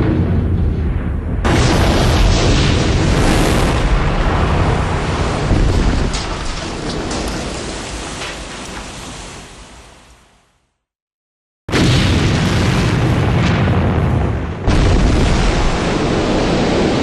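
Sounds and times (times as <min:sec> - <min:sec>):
deep rumble: 0:00.0 - 0:08.1
explosion blast: 0:00.0 - 0:08.2, 0:11.7 - 0:17.0
crackles: 0:00.0 - 0:10.1.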